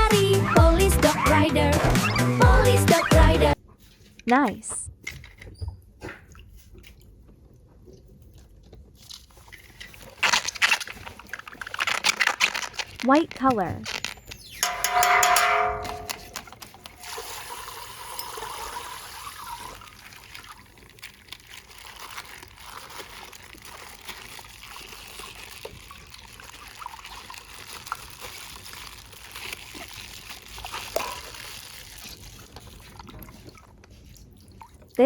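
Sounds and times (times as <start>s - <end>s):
water trickling from plastic bag: 8.9s - 14.6s, 17.0s - 35.0s.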